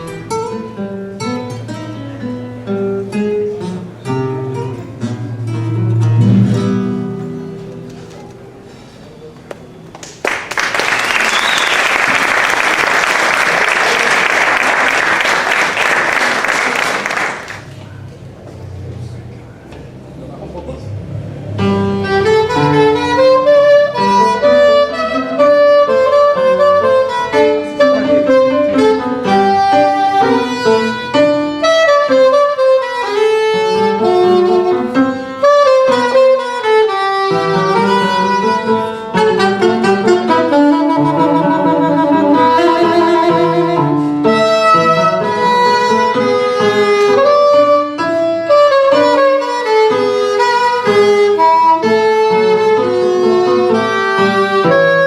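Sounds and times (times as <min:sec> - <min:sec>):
small ensemble playing baroque music: 0:00.0 - 0:09.7, 0:20.9 - 0:55.0.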